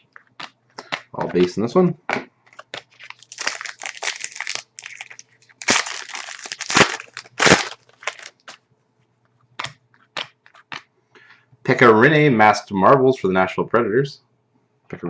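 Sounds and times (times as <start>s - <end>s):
card pack wrapper crinkling: 2.5s - 8.6s.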